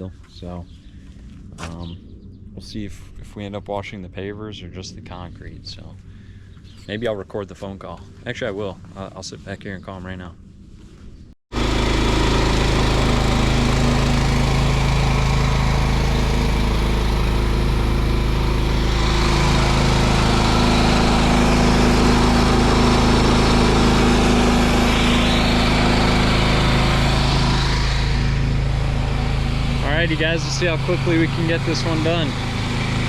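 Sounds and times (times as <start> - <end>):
small gasoline engine running: 11.5 - 33.0.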